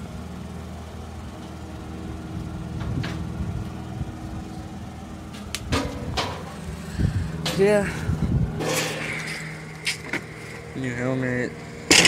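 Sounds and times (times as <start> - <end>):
low mechanical hum: 0.0 - 12.0
sharp knocks and clatters: 5.6 - 6.6.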